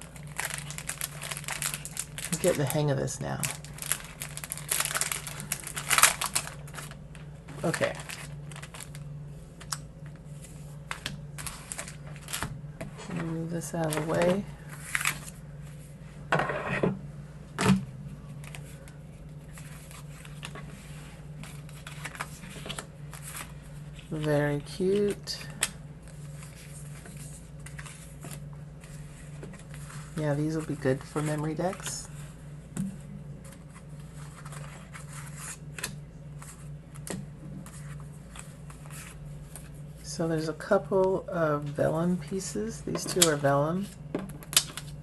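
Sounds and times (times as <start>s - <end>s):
steady low hum: 0.0s - 45.0s
paper rustling: 0.1s - 2.8s, 3.4s - 9.0s, 9.6s - 15.8s, 18.3s - 25.4s, 26.1s - 32.3s, 33.0s - 39.8s.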